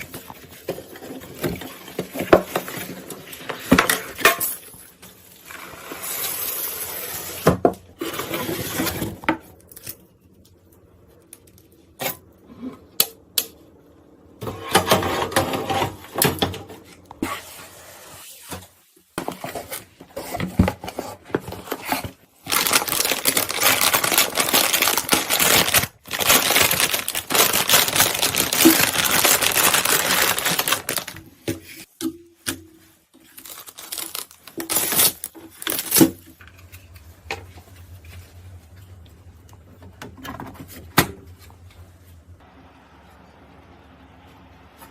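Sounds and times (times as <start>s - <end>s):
rustling noise: 36.5s - 39.5s.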